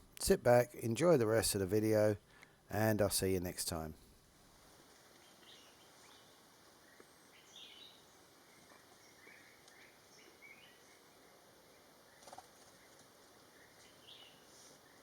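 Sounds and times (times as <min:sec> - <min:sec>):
outdoor background hiss: 0:00.0 - 0:15.0
small birds chirping: 0:05.0 - 0:15.0.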